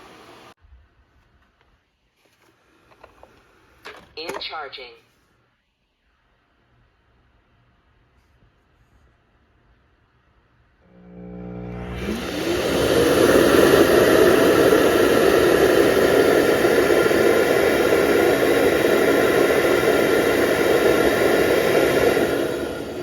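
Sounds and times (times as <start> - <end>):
suction motor whine: 10.8 - 23.0.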